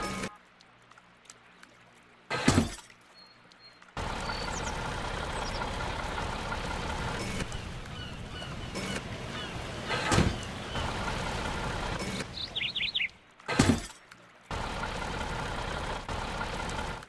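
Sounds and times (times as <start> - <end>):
steady mechanical running noise: 4.0 - 13.8, 14.5 - 17.0.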